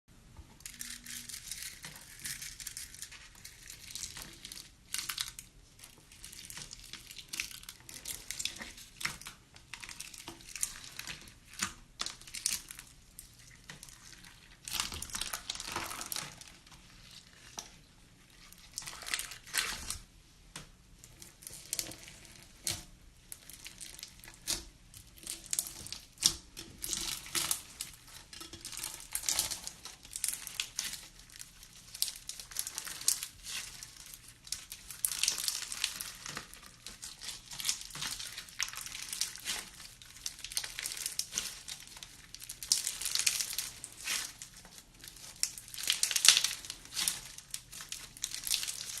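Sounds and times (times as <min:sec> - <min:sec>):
slime crackling and clicking: 0:23.4 - 0:49.0.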